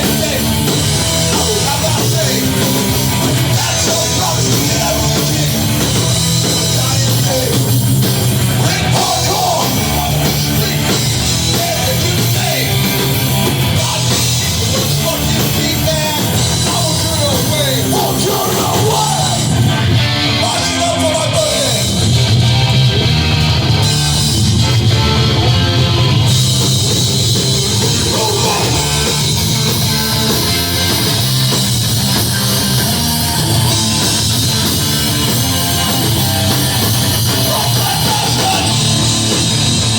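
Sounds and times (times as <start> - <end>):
person singing: 0.0 - 7.8, 8.6 - 19.6, 27.8 - 29.2, 37.2 - 39.4
punk band playing live: 0.0 - 39.9.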